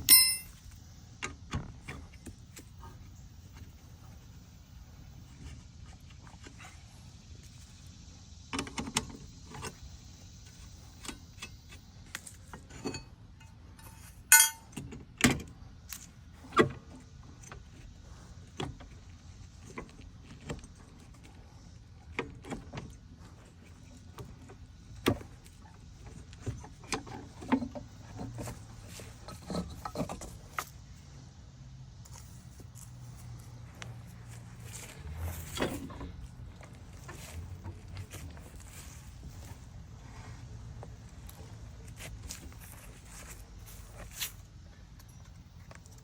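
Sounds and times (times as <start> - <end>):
hand tools clinking on metal: 0.0 - 0.6, 12.7 - 14.8
sharp metal clanks: 0.0 - 0.6, 13.8 - 14.8.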